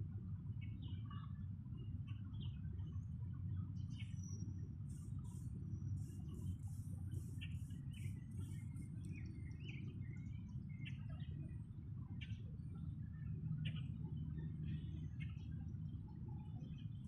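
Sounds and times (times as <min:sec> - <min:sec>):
steady low rumble: 0:00.0 - 0:17.0
birds chirping: 0:03.8 - 0:17.0.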